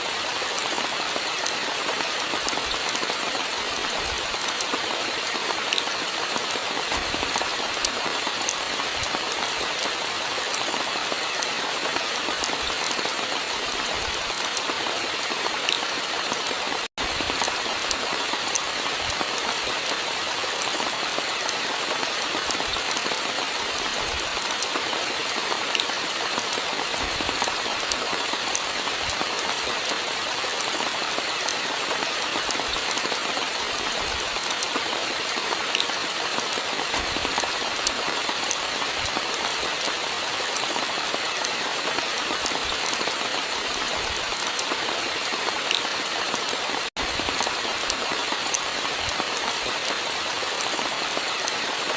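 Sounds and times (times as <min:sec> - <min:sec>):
rain hissing: 0:00.0 - 0:51.9
raindrops ticking on a surface: 0:00.1 - 0:51.9.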